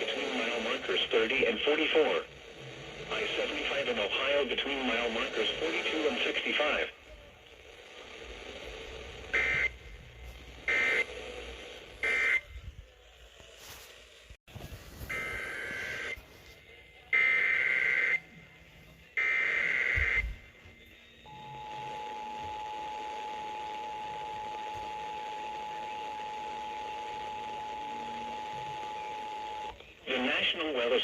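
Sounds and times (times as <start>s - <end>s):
steady attention tone: 15.0s - 29.7s.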